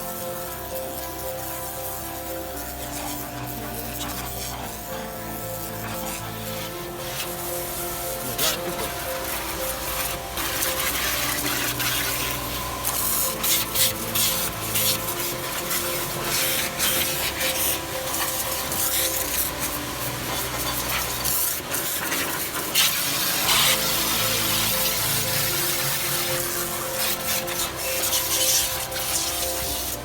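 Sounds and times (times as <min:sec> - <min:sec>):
pressure washer water jet hissing: 0:00.0 - 0:30.0.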